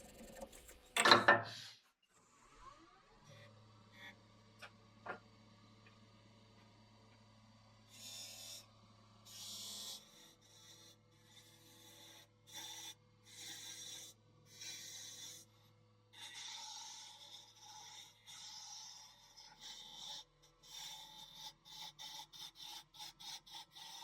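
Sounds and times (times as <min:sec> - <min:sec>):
tool scraping spinning wood: 0:00.0 - 0:01.7, 0:16.2 - 0:24.0.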